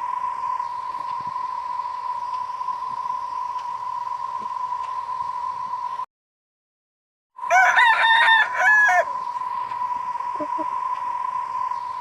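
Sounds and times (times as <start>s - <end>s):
rooster crowing: 7.4s - 10.9s.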